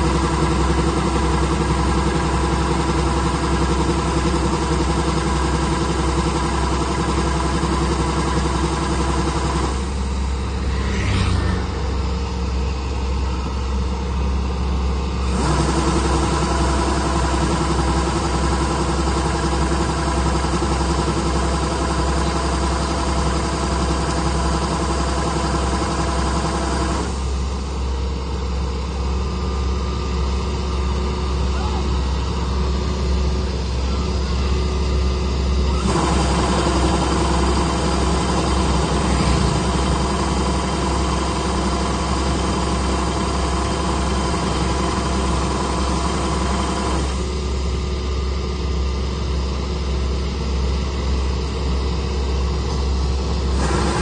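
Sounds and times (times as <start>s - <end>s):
harvesting machine engine running: 0.0s - 54.0s
rising whine: 8.2s - 15.4s, 27.2s - 47.8s.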